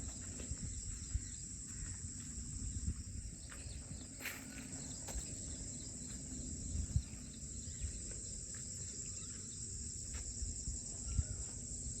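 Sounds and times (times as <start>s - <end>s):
high-pitched insect chorus: 0.0s - 12.0s.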